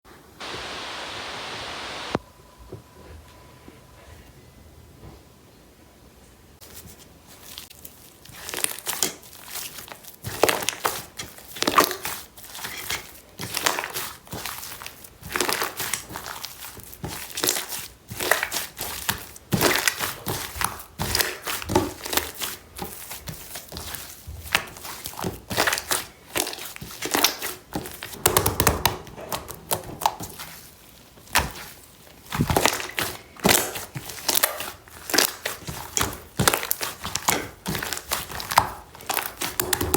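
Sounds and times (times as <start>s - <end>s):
slime squishing by hand: 6.6s - 39.9s.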